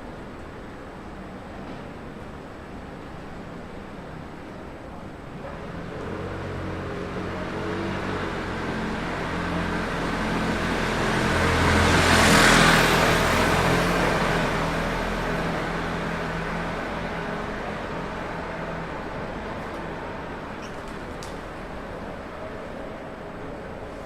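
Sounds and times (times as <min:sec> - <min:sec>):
vehicle passing close by: 0:05.7 - 0:20.4.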